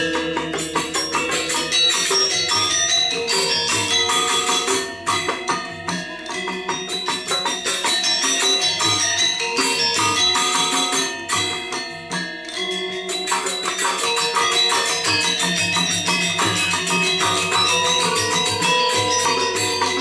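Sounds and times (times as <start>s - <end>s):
drum: 0.0s - 12.2s, 13.2s - 20.0s
jingling cymbals: 0.0s - 20.0s
metallophones and gongs: 0.0s - 20.0s.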